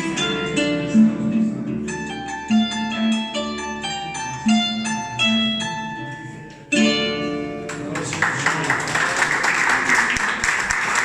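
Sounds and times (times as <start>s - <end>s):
plucked string instrument melody: 0.0s - 8.8s
applause: 7.7s - 11.0s.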